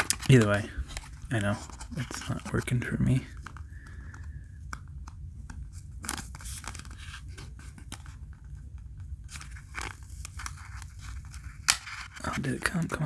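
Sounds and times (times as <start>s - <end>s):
cardboard scraping and rustling: 0.0s - 3.7s, 5.7s - 8.3s, 9.2s - 13.0s.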